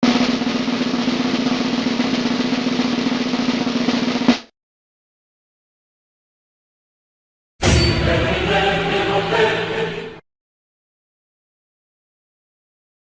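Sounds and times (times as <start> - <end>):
snare drum roll: 0.0 - 4.5
sharp drum hit: 7.6 - 9.9.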